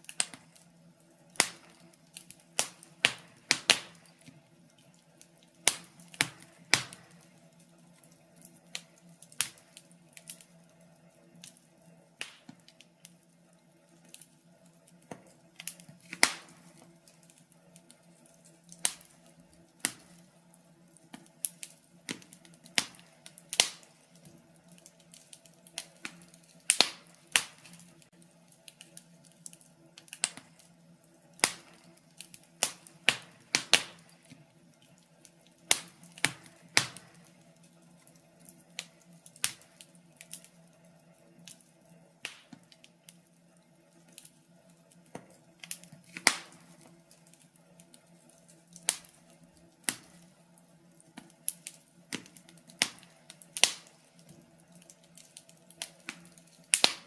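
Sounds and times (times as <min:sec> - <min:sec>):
sharp fire pops: 0:00.0 - 0:00.7, 0:01.3 - 0:04.4, 0:05.6 - 0:07.3, 0:08.4 - 0:10.5, 0:12.2 - 0:13.1, 0:15.0 - 0:17.3, 0:18.7 - 0:20.2, 0:21.0 - 0:28.1, 0:28.7 - 0:30.7, 0:31.4 - 0:34.4, 0:35.6 - 0:37.4, 0:38.8 - 0:40.5, 0:42.2 - 0:42.9, 0:45.0 - 0:46.9, 0:48.8 - 0:49.2, 0:49.8 - 0:50.3, 0:51.1 - 0:57.0
faint steady hum: 0:00.0 - 0:57.0
wood fire crackling: 0:00.0 - 0:57.0.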